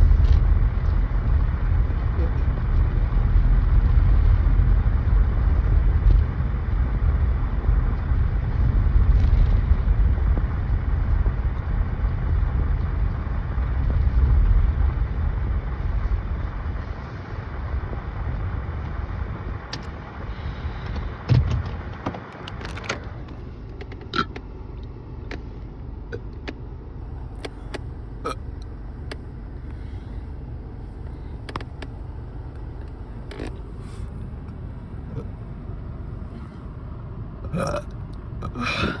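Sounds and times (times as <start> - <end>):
road rumble inside moving car: 0.0 - 39.0
girl burping: 37.5 - 39.0.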